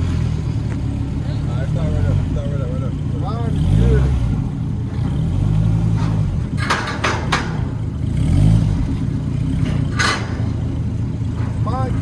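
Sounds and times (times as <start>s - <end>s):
car engine revving: 0.0s - 12.0s
sharp clattering: 4.8s - 12.0s.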